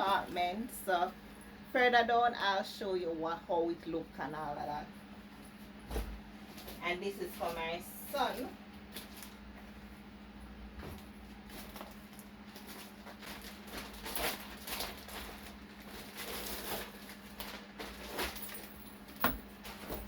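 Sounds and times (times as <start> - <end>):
faint steady hum: 0.0 - 20.0
packaging rustling and crinkling: 8.2 - 9.4, 10.9 - 20.0.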